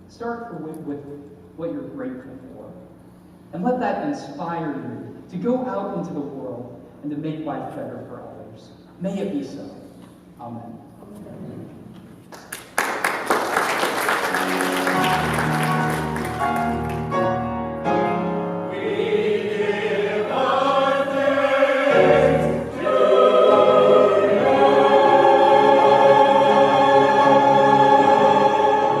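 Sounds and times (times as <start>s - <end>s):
choir singing held chords: 14.3s - 29.0s.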